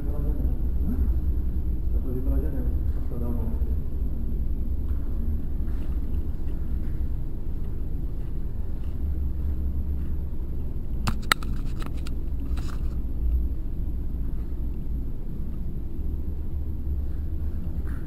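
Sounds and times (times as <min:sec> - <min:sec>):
steady low rumble: 0:00.0 - 0:18.0
sharp clicks: 0:11.0 - 0:12.2.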